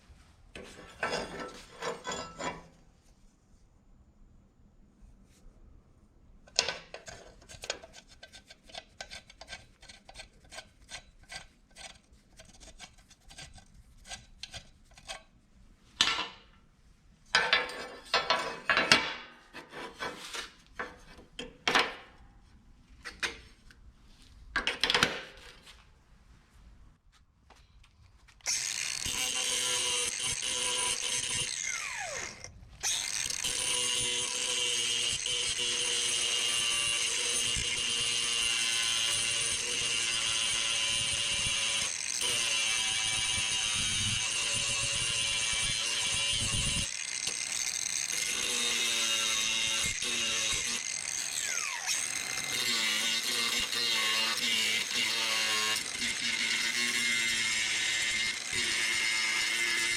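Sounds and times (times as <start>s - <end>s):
metal scraping and grinding: 0.6s - 2.8s, 17.4s - 19.0s.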